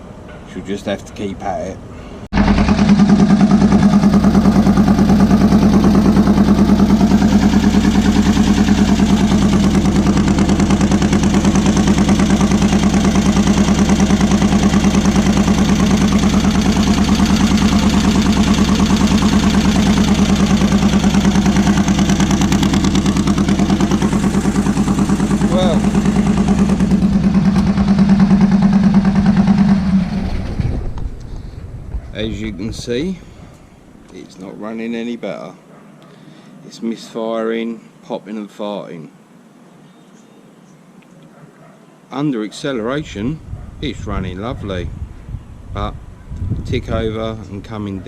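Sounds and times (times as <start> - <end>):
buggy engine running: 2.4 - 33.6.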